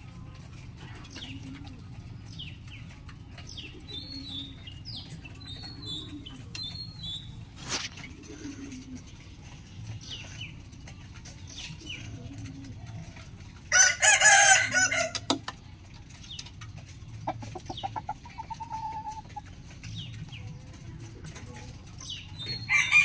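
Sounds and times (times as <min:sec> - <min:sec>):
rooster crowing: 0:13.7 - 0:15.3, 0:22.7 - 0:23.0.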